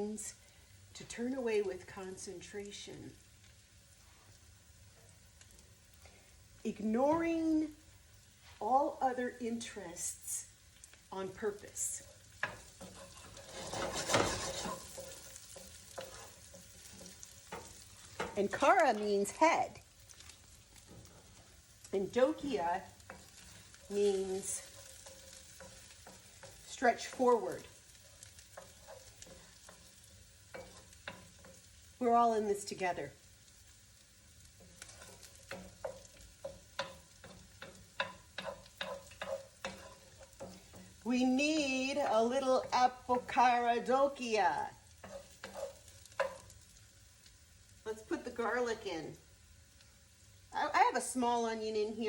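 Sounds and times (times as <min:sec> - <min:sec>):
onion sizzling in oil: 0:00.0 - 0:52.0
utensil scraping and tapping pan: 0:12.0 - 0:19.0, 0:23.0 - 0:31.8, 0:34.5 - 0:44.0, 0:44.9 - 0:46.7.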